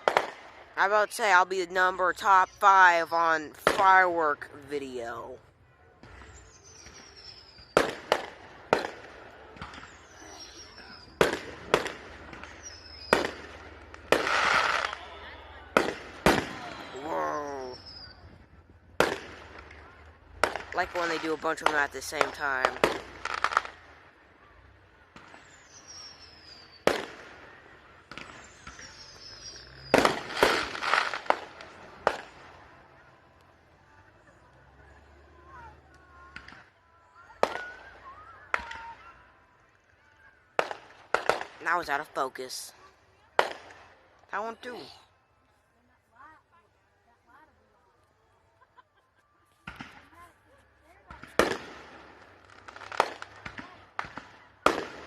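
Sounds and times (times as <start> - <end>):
firework bangs: 0.0 - 0.7, 6.0 - 17.1, 18.9 - 24.2, 25.1 - 32.6, 40.6 - 41.8, 51.1 - 55.0
firework crackling: 0.0 - 1.4, 6.9 - 18.0, 18.9 - 24.3, 25.2 - 32.8, 51.1 - 55.0
firework whistle: 12.4 - 18.3.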